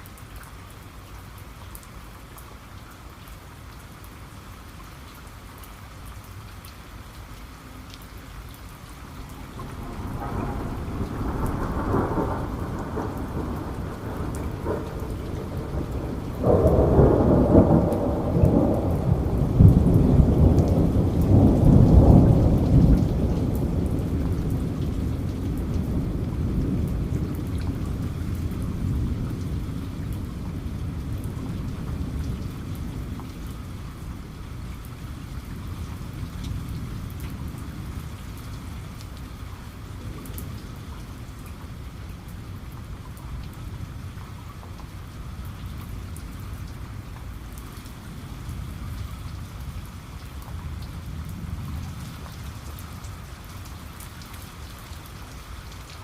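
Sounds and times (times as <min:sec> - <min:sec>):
steady rain: 0:00.0 - 0:56.0
thunder rumbling: 0:09.1 - 0:47.1, 0:47.9 - 0:53.1.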